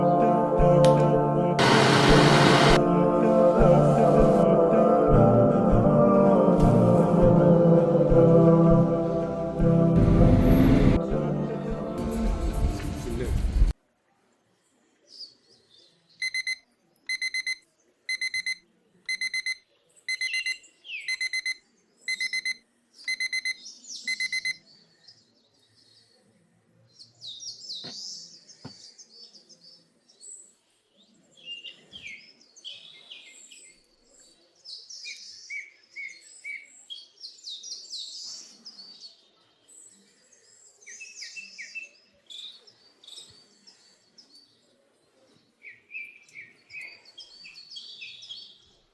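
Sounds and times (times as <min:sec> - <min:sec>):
birds chirping: 0:01.6 - 0:02.8
electronic alarm beeping: 0:16.2 - 0:24.6.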